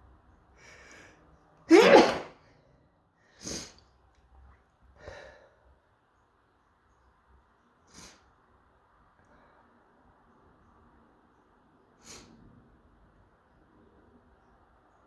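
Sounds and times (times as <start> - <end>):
person sneezing: 1.7 - 2.3.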